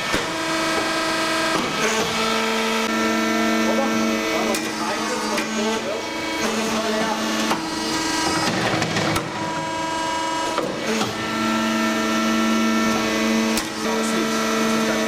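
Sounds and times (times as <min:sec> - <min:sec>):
press machine hum and whine: 0:00.0 - 0:15.0.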